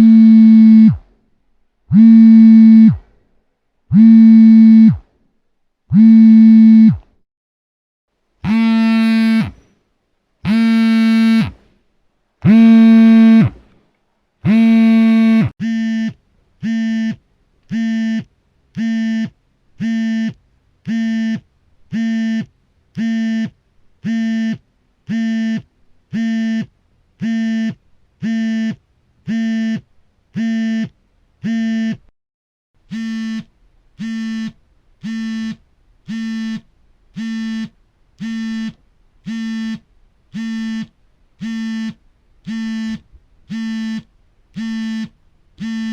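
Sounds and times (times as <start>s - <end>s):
smartphone vibrating: 0.0s - 1.1s, 1.9s - 3.1s, 3.9s - 5.1s, 5.9s - 7.1s, 8.4s - 9.6s, 10.4s - 11.6s, 12.4s - 13.6s, 14.4s - 32.1s, 32.9s - 45.9s.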